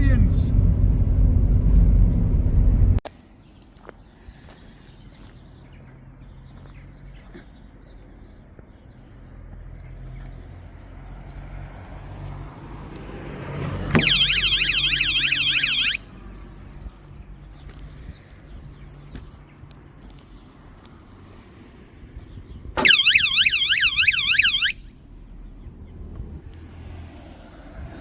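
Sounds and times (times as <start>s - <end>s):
low vehicle rumble: 0.0s - 3.3s, 24.4s - 28.0s.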